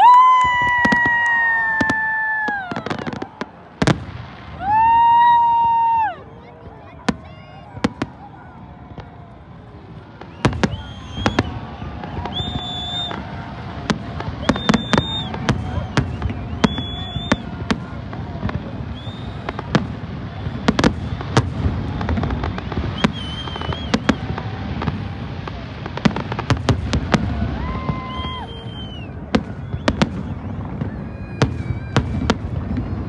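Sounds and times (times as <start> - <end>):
fireworks whistling: 0.0 - 6.2, 9.0 - 33.0
fireworks bangs and crackles: 0.0 - 33.0.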